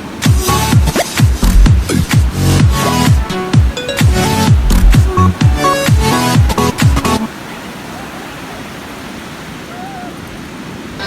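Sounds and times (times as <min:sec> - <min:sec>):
surf: 0:00.0 - 0:11.0
electronic dance music: 0:00.2 - 0:07.3.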